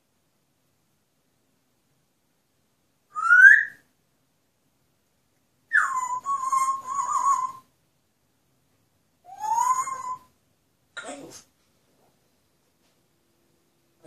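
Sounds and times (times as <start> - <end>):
parrot whistling: 3.1 - 3.8, 5.7 - 7.7, 9.2 - 10.4.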